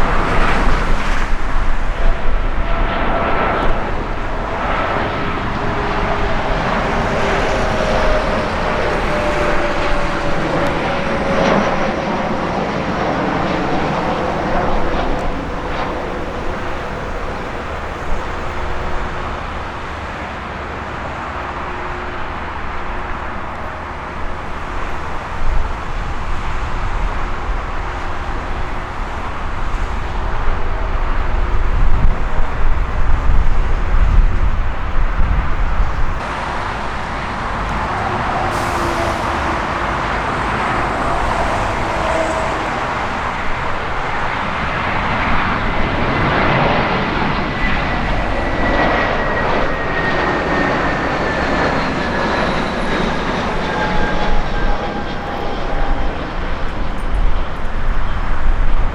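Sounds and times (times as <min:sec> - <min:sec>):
jet engine rumble: 0:00.0 - 0:58.9.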